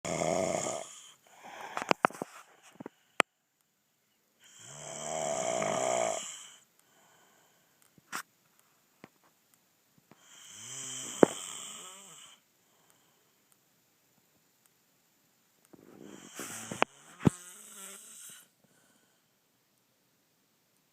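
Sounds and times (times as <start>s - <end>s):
man snoring loudly: 0.1s - 1.6s, 4.4s - 6.6s, 10.2s - 12.4s, 16.0s - 18.5s.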